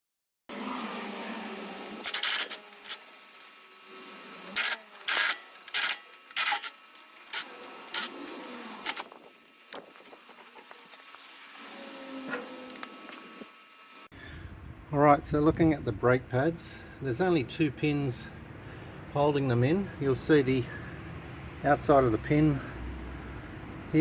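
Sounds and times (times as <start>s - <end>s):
hand tool scraping: 0.5s - 11.0s.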